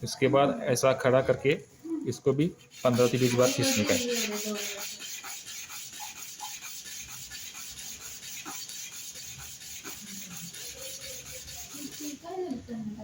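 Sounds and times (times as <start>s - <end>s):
metal scratching on sandpaper: 2.4s - 12.5s.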